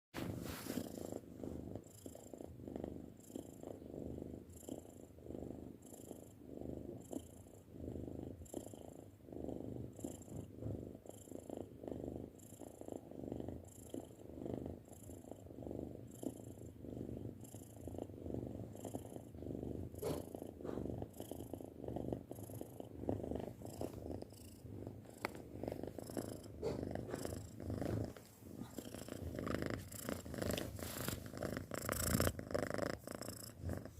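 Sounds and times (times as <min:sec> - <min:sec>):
cat purring: 0:00.2 - 0:33.9.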